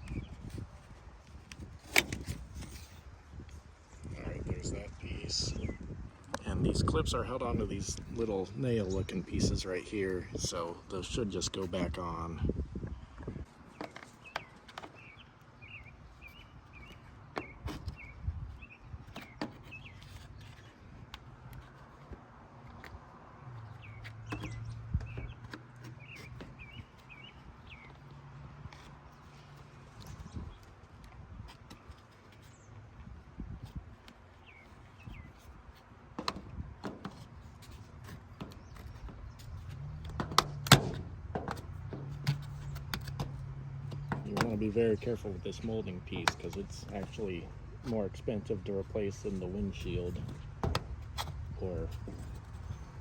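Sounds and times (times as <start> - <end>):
sharp clicks and knocks: 36.2 - 44.6, 49.8 - 52.8.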